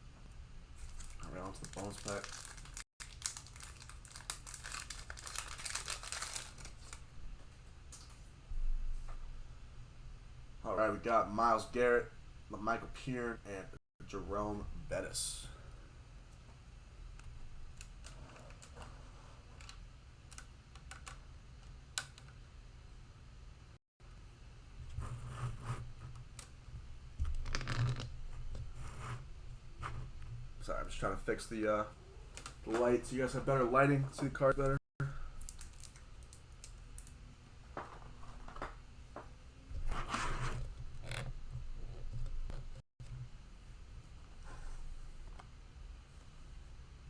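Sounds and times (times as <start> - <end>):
rustling scrape: 39.8 - 40.7.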